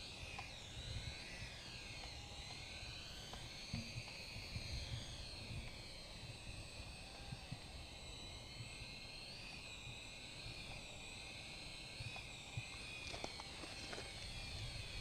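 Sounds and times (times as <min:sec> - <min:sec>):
toy helicopter motor whine: 0:07.2 - 0:15.0.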